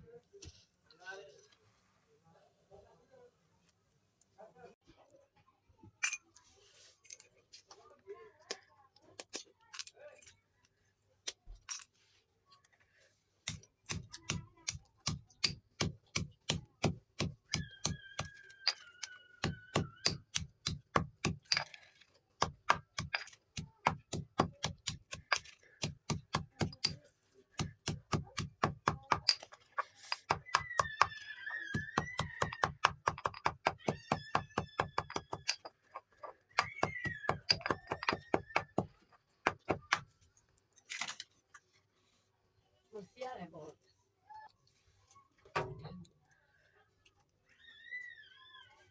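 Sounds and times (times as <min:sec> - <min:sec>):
chalk sticks being crushed: 0:13.5 - 0:40.1.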